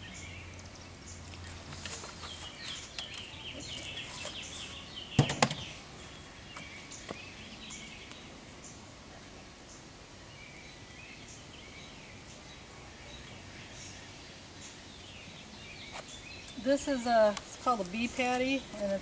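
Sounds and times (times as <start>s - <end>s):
songbirds chirping: 0.0s - 19.0s
sharp knocks: 5.2s - 5.7s.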